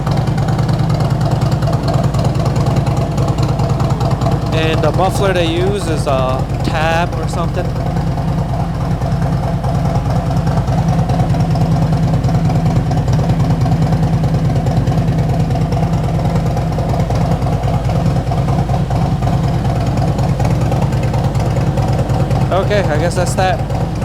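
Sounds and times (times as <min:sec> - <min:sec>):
motorcycle engine idling: 0:00.0 - 0:24.0.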